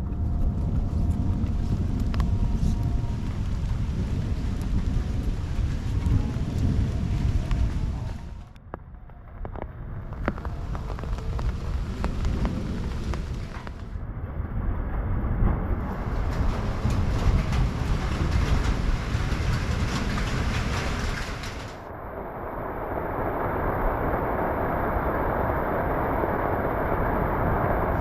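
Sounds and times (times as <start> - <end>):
deep heavy rumble: 0.0 - 28.0
steady hiss of rain: 0.5 - 8.6, 9.5 - 14.0, 15.8 - 28.0
raindrops ticking: 9.4 - 13.9.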